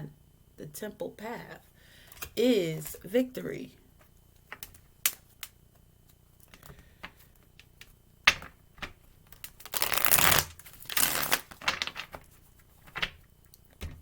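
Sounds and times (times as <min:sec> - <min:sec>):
cards tapping and clicking: 0:06.4 - 0:13.2
cards shuffling: 0:08.3 - 0:13.2.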